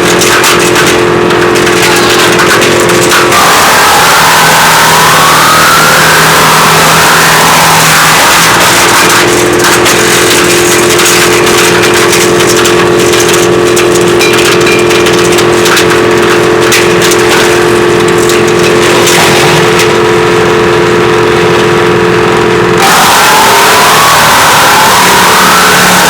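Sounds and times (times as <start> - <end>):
wood cracks and knocks: 0.0 - 20.0
woodchipper whine: 0.0 - 26.0.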